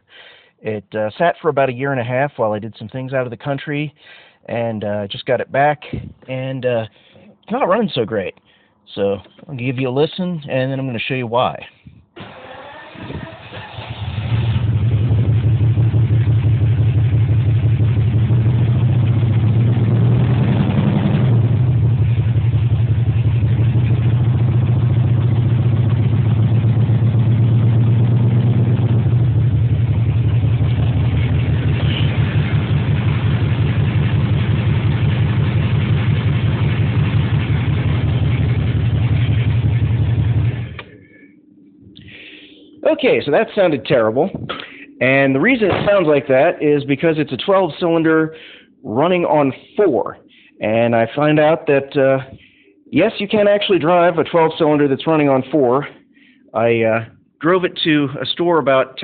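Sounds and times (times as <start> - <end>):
car engine running rough: 12.2 - 41.0.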